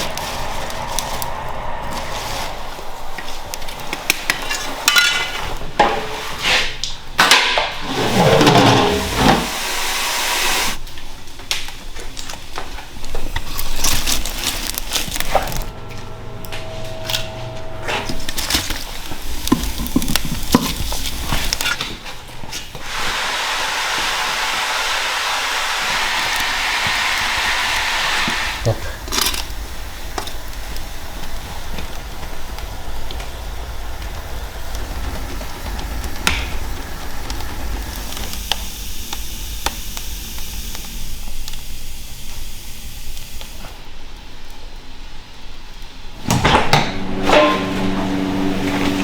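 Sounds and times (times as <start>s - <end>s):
steady rushing noise: 0.0s - 7.1s, 23.4s - 41.4s
metal pots clattering: 3.7s - 9.6s, 47.0s - 49.0s.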